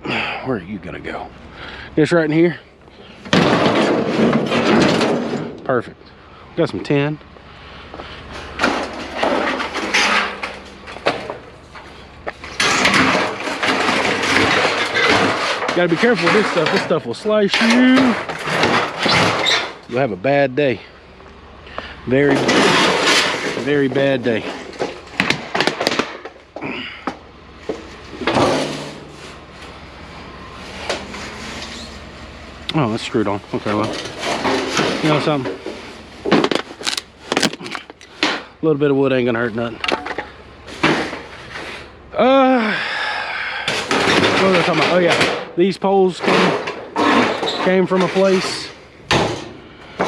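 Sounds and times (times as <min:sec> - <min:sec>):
sheet tin scraping and rustling: 0:02.4 - 0:05.7, 0:08.0 - 0:20.1, 0:22.1 - 0:26.4, 0:27.6 - 0:38.6, 0:39.6 - 0:42.0, 0:43.7 - 0:50.0.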